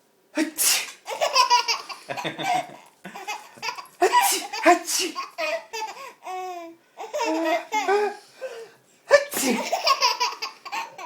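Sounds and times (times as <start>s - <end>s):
baby laughing: 1.0s - 8.2s, 9.4s - 11.0s.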